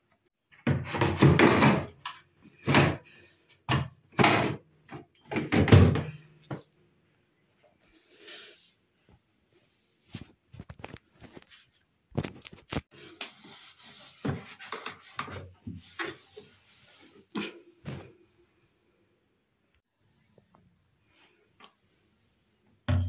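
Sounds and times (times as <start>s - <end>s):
rubbing and wiping: 12.9s - 17.3s.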